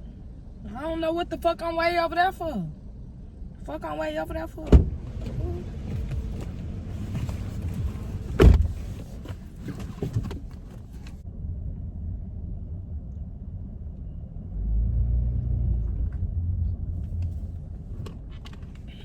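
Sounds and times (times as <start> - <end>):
low muffled rumble: 0.0 - 19.0
loud thump in car: 4.7 - 10.5.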